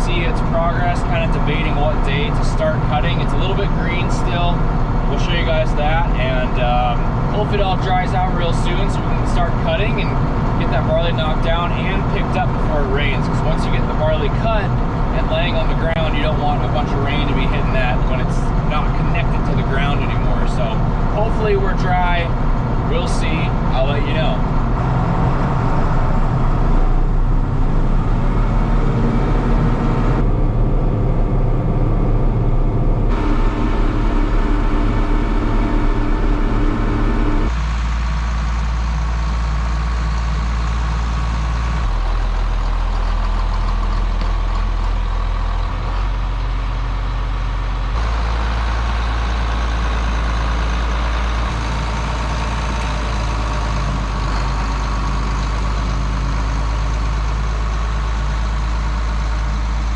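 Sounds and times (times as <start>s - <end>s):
tractor diesel engine running: 0.0s - 59.9s.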